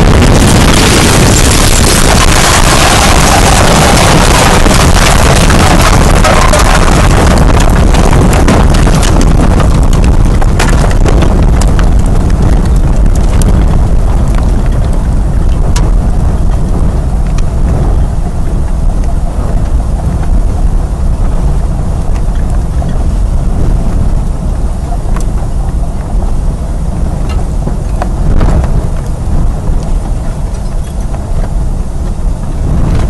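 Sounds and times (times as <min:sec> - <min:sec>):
sharp knocks and clatter: 0:00.0 - 0:16.0
tornado wind roaring: 0:00.0 - 0:33.0.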